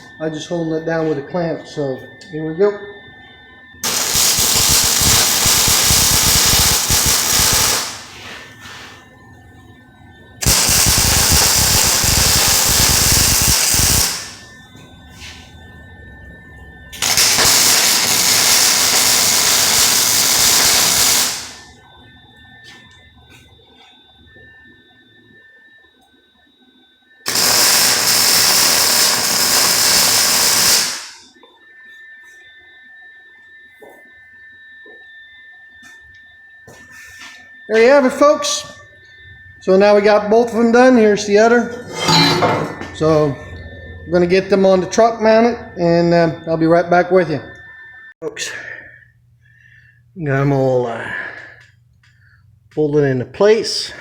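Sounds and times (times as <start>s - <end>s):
welder crackling sizzle: 3.8s - 9.1s, 10.4s - 14.5s, 17.0s - 21.8s, 27.2s - 31.3s.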